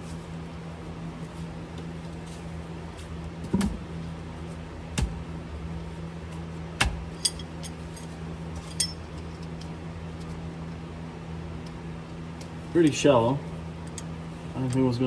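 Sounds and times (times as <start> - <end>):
steady low hum: 0.0 - 15.0
hand tools clinking on metal: 7.2 - 9.6.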